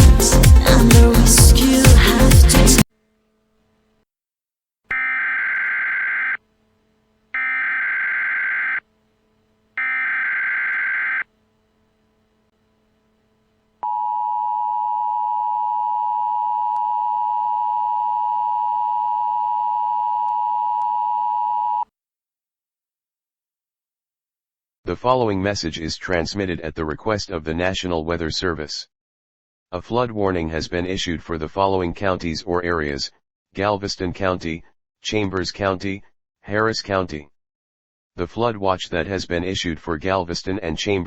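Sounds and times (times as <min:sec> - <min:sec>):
steady attention tone: 0:04.9 - 0:19.5.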